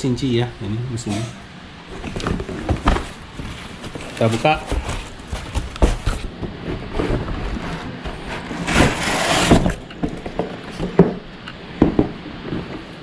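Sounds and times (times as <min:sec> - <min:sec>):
loud scraping rustle: 0:01.9 - 0:10.8
knocks and clatter: 0:02.0 - 0:12.9.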